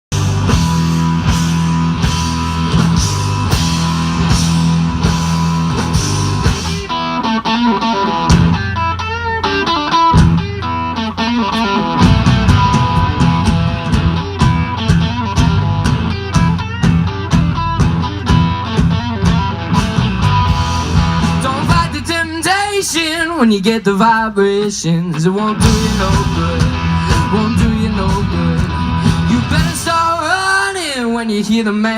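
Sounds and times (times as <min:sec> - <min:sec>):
electric guitar bent notes: 0:00.1 - 0:23.8, 0:24.6 - 0:31.4
blues-rock band playing: 0:00.1 - 0:31.9.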